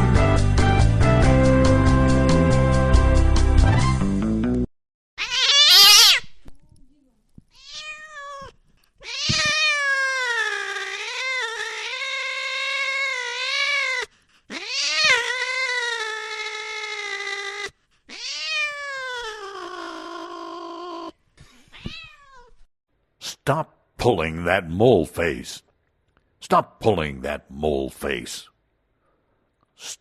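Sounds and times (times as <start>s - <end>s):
cat yowling: 5.2s - 6.4s, 7.5s - 22.6s.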